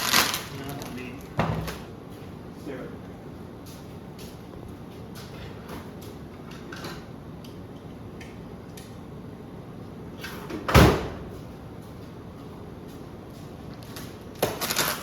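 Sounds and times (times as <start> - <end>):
plastic wrapping crinkling: 0.0 - 1.4, 13.8 - 15.0.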